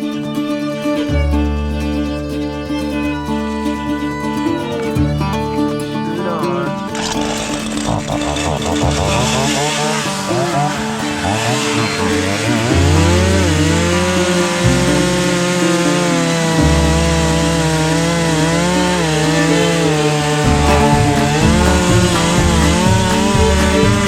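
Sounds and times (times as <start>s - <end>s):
chainsaw cutting wood: 6.9s - 24.0s.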